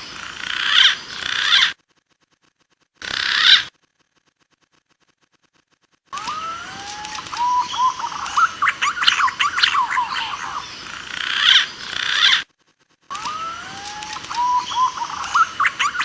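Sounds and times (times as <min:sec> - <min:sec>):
recorded pigeon call: 0:06.2 - 0:12.4, 0:13.1 - 0:16.0.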